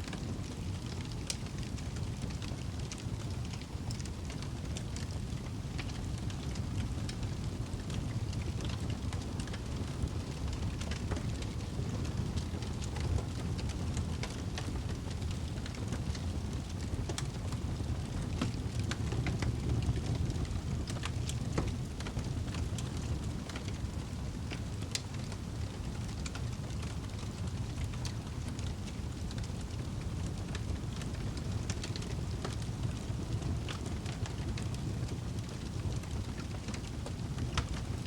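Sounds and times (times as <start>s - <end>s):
fire crackles and pops: 0.0s - 38.0s
low rumble of flames: 0.0s - 38.0s.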